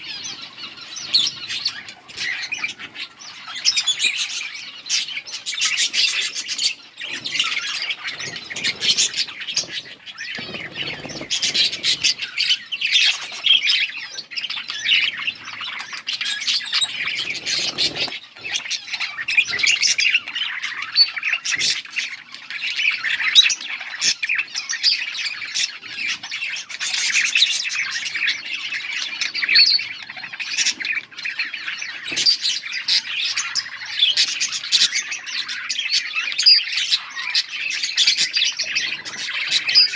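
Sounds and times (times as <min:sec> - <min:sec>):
budgerigars chirping and chattering: 0:00.0 - 0:39.9.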